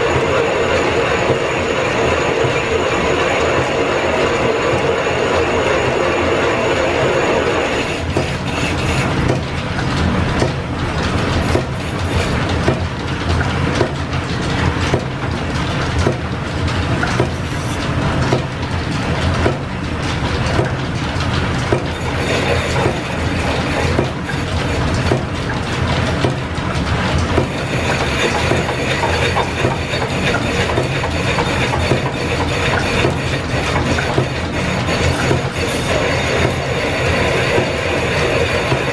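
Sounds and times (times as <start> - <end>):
clatter of belts and gears: 7.8 - 38.9.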